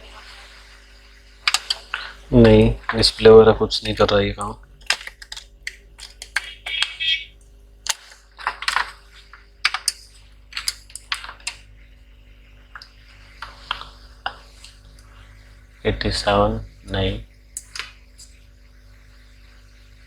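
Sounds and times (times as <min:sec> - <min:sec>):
faint steady hum: 0:00.0 - 0:20.0
small objects clicking and tapping: 0:01.4 - 0:11.7, 0:17.6 - 0:18.4.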